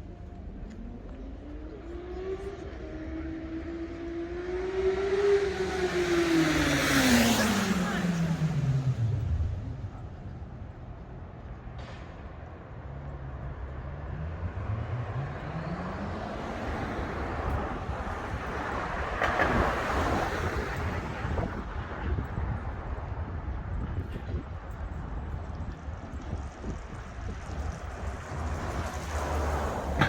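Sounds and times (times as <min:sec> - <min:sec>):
vehicle passing close by: 0:01.7 - 0:10.2, 0:26.3 - 0:30.0
car engine accelerating: 0:13.3 - 0:21.5.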